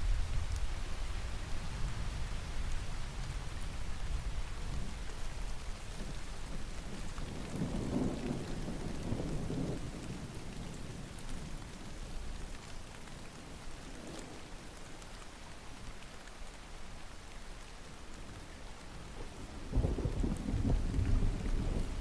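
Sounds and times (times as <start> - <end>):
steady rain falling: 0.0 - 22.0
distant thunder rolling: 19.2 - 22.0.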